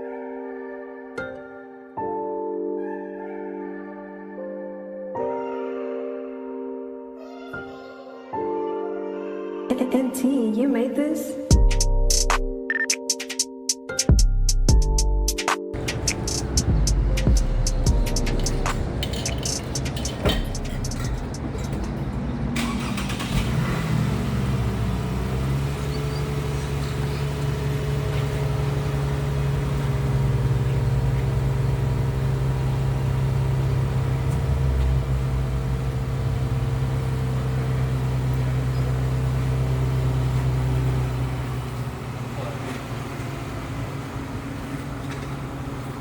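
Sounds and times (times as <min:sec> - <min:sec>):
car engine idling: 0:15.8 - 0:46.0.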